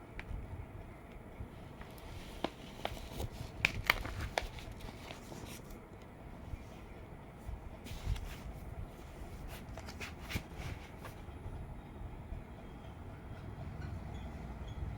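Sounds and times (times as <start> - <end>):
packaging crinkling: 1.8 - 5.8, 9.2 - 11.2.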